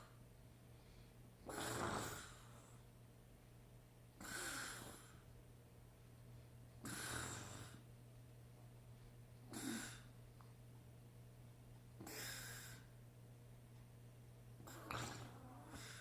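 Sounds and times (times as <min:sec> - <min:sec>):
man snoring: 0:01.5 - 0:02.5, 0:04.2 - 0:05.2, 0:06.8 - 0:07.8, 0:09.5 - 0:10.1, 0:14.7 - 0:16.0.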